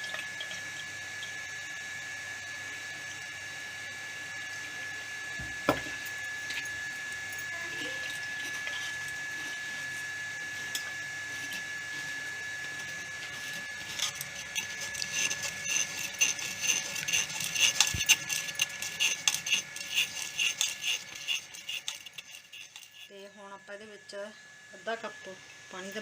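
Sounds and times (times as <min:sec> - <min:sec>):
metal spoon scraping a metal sieve: 0:07.5 - 0:23.1.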